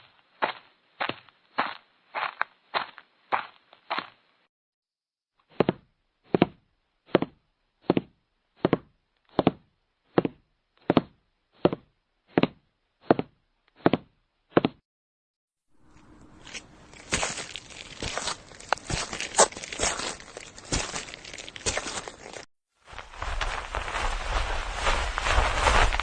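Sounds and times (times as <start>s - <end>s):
footsteps with sharp knocks: 0.0s - 4.2s, 5.4s - 14.8s, 15.8s - 26.0s.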